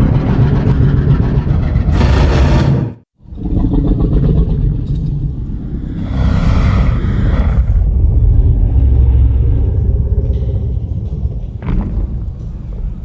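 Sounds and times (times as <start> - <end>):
deep continuous rumble: 0.0 - 13.0
higher noise swell: 5.5 - 10.1.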